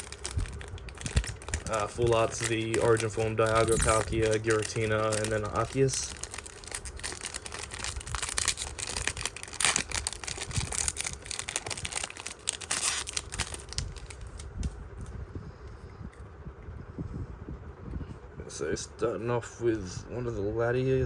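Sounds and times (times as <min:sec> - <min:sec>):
foil wrapper tearing and crinkling: 0:00.0 - 0:14.6.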